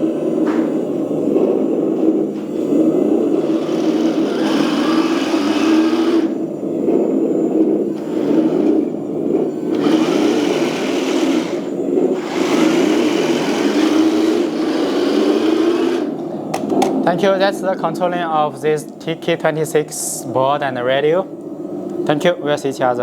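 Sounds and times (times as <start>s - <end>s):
toy tank motors whirring: 3.4s - 6.4s, 8.0s - 8.8s, 9.6s - 16.2s.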